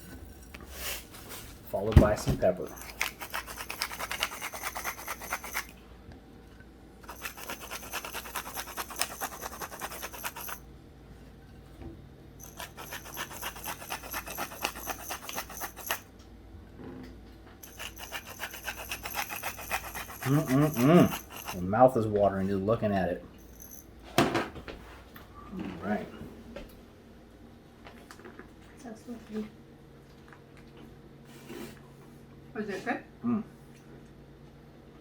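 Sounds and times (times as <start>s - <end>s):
pepper mill grinding: 1.7s - 5.8s, 7.0s - 10.6s, 12.4s - 16.0s, 17.6s - 21.7s.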